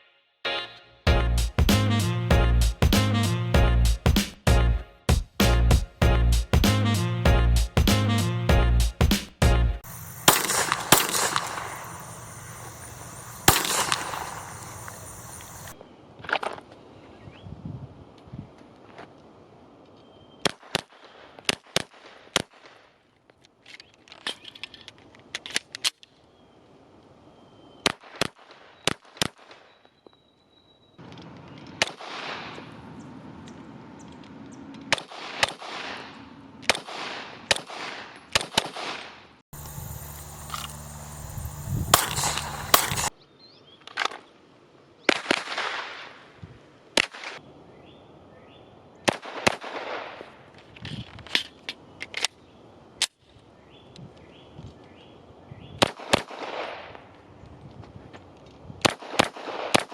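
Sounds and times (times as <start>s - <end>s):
pistol shots: 9.9s - 15.7s, 41.9s - 43.1s.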